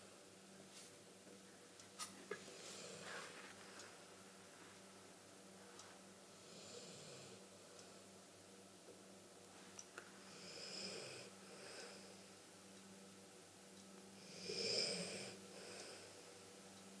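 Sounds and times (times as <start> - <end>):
soft breath: 2.3 - 4.1, 9.6 - 12.3, 15.0 - 16.4.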